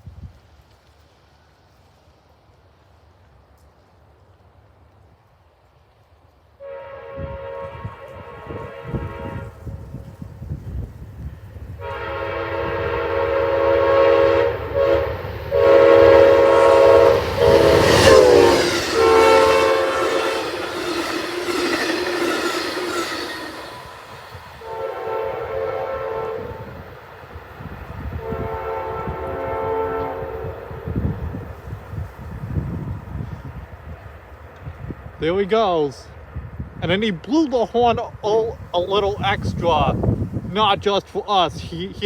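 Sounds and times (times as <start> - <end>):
train rumbling on rails: 0.0 - 35.2, 36.1 - 42.0
train air horn blasts: 6.6 - 10.0, 11.8 - 26.9, 27.9 - 32.1.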